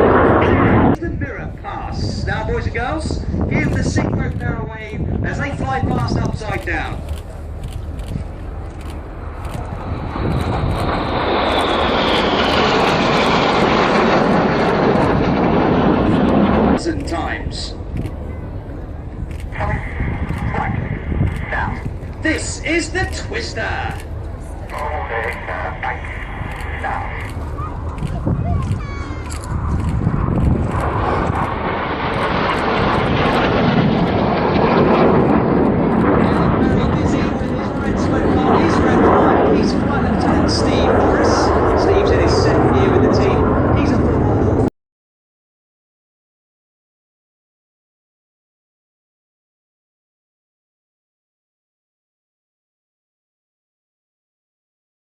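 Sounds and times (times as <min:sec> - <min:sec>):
jets flying past: 0:00.0 - 0:04.3, 0:07.8 - 0:18.4, 0:24.8 - 0:44.7
high whine gliding downward: 0:06.1 - 0:44.7.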